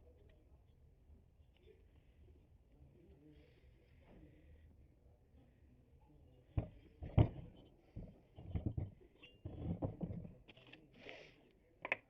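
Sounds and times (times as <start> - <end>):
objects knocking and clattering: 6.6 - 10.6.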